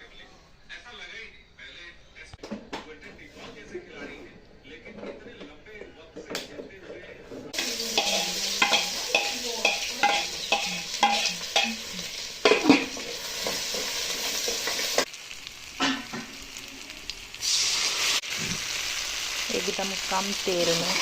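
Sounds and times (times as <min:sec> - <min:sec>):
spoon scraping a pan: 0:07.5 - 0:15.1, 0:20.5 - 0:21.0
food sizzling in oil: 0:07.5 - 0:21.0.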